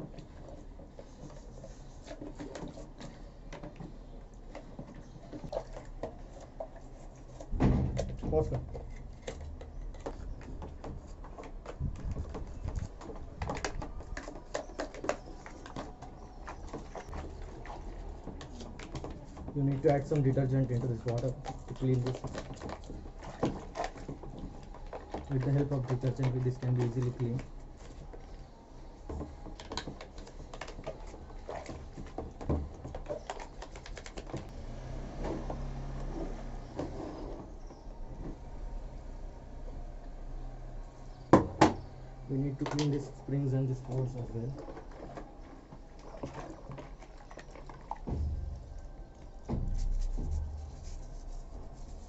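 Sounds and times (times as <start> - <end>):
brush scrubbing plastic: 8.6 - 34.4, 42.5 - 52.0
plastic parts clicking and tapping: 29.0 - 34.5.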